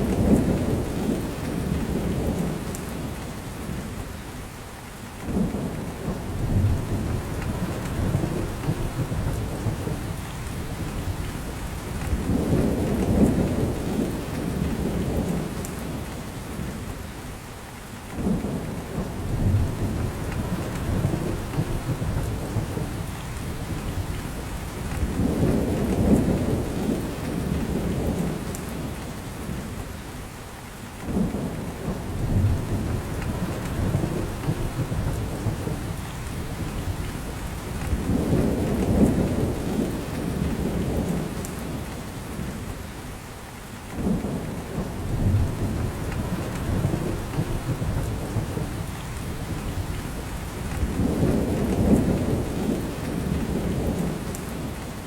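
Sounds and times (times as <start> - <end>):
rain dripping through branches: 0.0 - 55.0.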